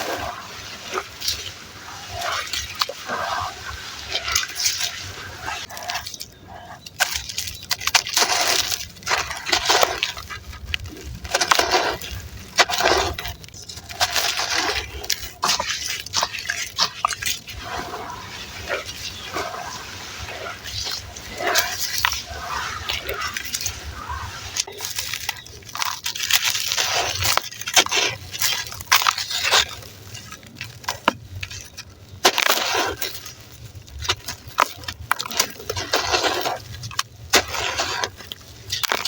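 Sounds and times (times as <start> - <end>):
wet sand crumbling and squishing: 0.0 - 39.0.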